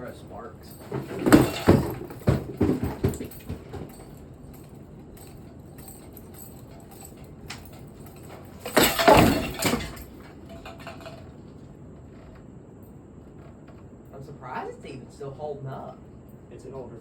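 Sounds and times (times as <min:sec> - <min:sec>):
clattering knocks of wobbling fan: 0:00.0 - 0:11.4
ceiling fan running: 0:00.0 - 0:17.0.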